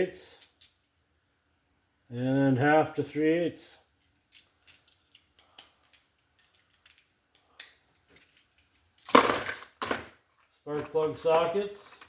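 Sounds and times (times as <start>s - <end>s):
tools clinking together: 4.0s - 11.4s.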